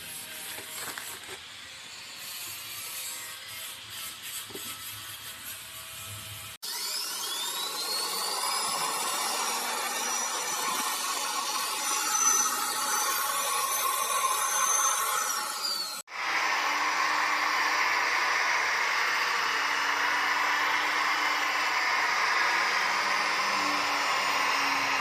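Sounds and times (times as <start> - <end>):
electric polisher motor whine: 5.9 - 25.0.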